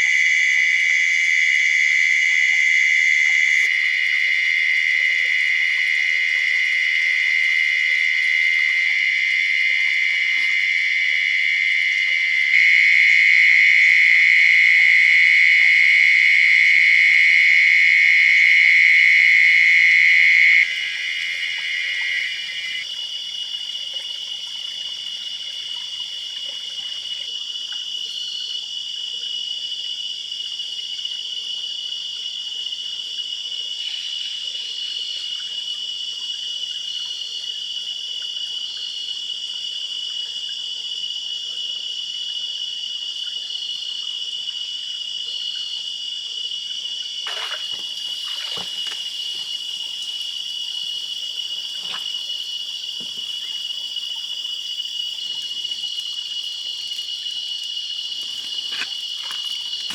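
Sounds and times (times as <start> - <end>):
lower-pitched insect calling: 0.0 - 22.9, 47.0 - 59.9
insects trilling: 0.0 - 59.9.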